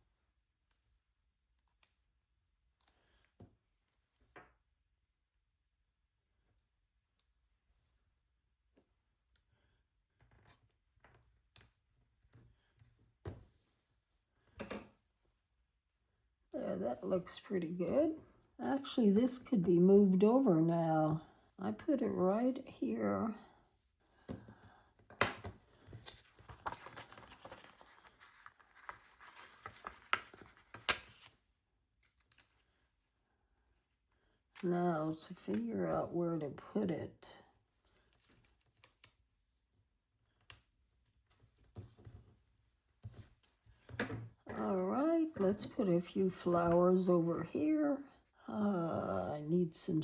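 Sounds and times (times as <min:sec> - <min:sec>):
paper stickers tapping and rustling: 0:25.1 - 0:31.3.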